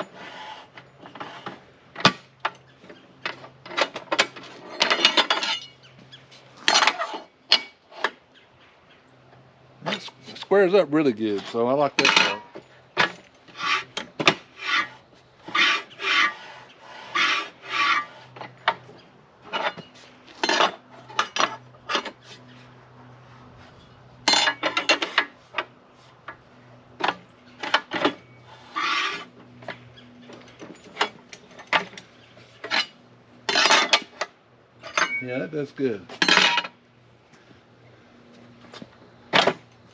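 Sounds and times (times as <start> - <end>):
saw fence scraping along rails: 0.0 - 8.3, 9.4 - 39.9
metal clicks and clanks: 0.7 - 5.8, 6.6 - 8.2, 11.2 - 14.4, 18.3 - 22.2, 24.2 - 26.4, 27.0 - 35.3, 36.1 - 36.8.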